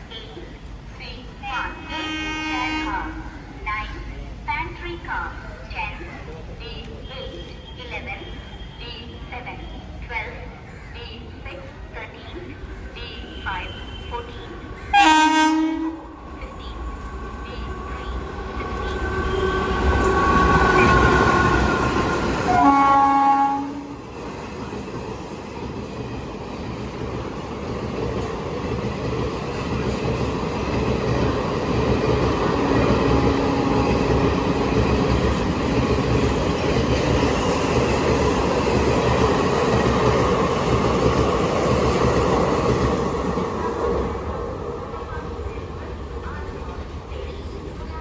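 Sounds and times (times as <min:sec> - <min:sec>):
loud train horn blast: 0:01.9 - 0:03.4, 0:13.2 - 0:16.1, 0:18.8 - 0:20.9, 0:22.5 - 0:24.0
train wheels rumbling and rattling: 0:13.3 - 0:48.0.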